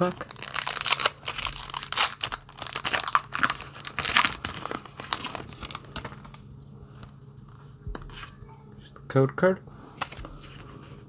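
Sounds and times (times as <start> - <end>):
foil wrapper tearing and crinkling: 0.0 - 6.4.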